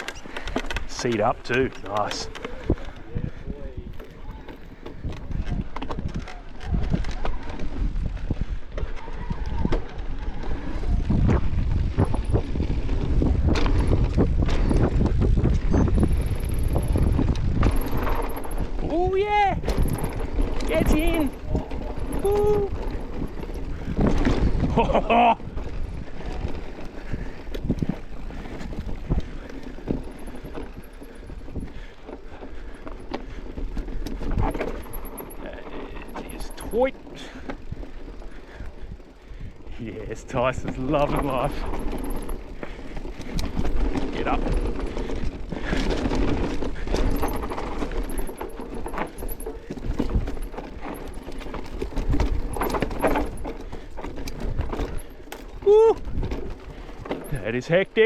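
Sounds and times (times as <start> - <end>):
bike knocks and rattles: 0.0 - 3.2, 3.9 - 7.8, 11.1 - 58.0
wind on microphone: 0.0 - 32.8, 33.6 - 57.4
bike tyre noise on dirt: 0.0 - 58.0
bike frame knocks: 48.0 - 57.4.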